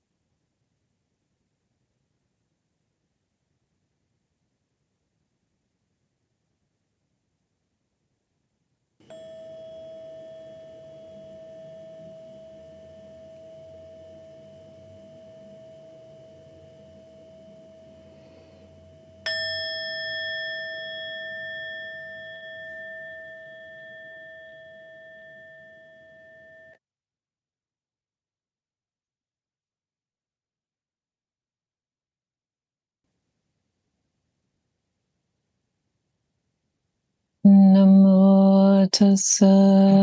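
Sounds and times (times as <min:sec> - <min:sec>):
meditation bell ringing: 0:09.0 - 0:26.8.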